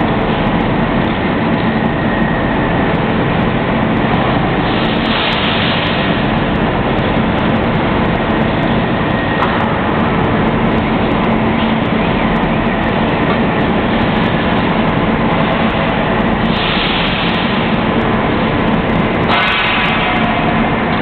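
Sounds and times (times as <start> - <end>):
arc welding crackling hiss: 16.4 - 17.8.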